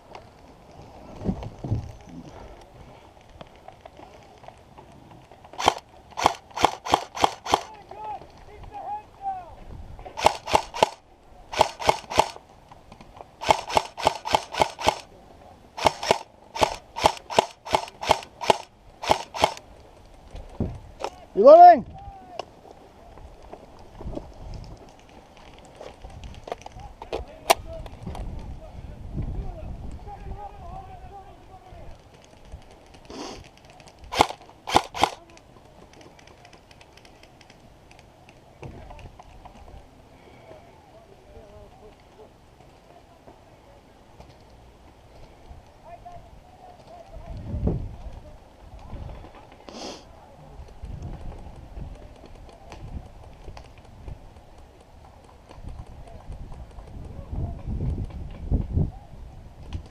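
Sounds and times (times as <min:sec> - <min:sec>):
airsoft gun shots: 0:05.6 - 0:07.7, 0:10.2 - 0:12.4, 0:13.4 - 0:15.1, 0:15.8 - 0:19.6, 0:34.1 - 0:35.2.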